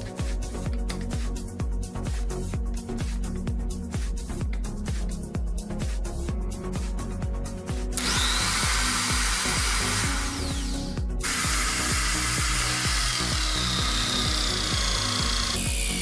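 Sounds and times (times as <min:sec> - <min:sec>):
background music with beat: 0:00.0 - 0:16.0
electric drill boring: 0:08.0 - 0:16.0.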